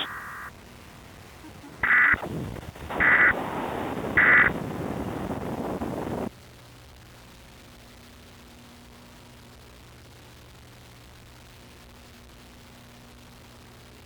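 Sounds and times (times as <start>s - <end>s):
data tone bursts: 0.0s - 0.5s, 1.4s - 2.3s, 2.9s - 3.4s, 4.2s - 4.5s
faint low hum: 0.0s - 14.0s
rough rumbling noise: 0.6s - 6.3s.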